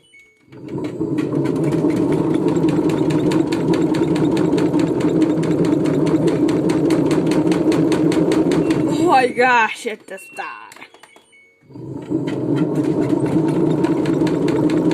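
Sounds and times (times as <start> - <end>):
machine knocking rapidly: 0.5 - 9.0, 11.7 - 14.9
washing machine drum spinning: 0.5 - 9.4, 11.7 - 14.9.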